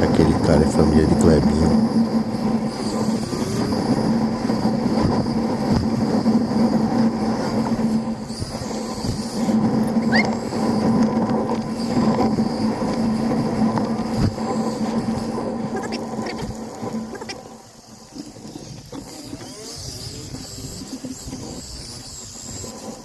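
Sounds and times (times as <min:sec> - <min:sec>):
motorcycle engine hum: 0:00.0 - 0:23.0
road and wind noise: 0:00.0 - 0:23.0
rising squeak: 0:09.8 - 0:10.9.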